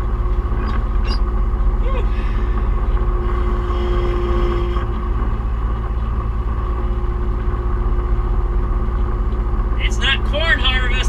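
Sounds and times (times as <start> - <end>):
high-pitched whine: 0.0 - 2.6
combine engine drone: 0.0 - 11.0.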